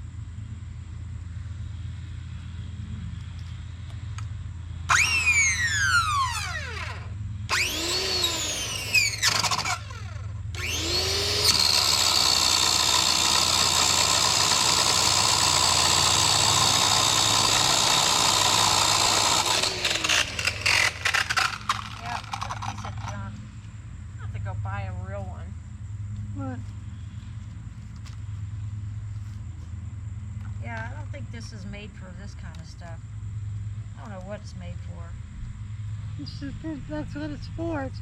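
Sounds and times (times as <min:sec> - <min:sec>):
low steady hum: 0:00.0 - 0:38.0
small chainsaw revving: 0:04.9 - 0:23.3.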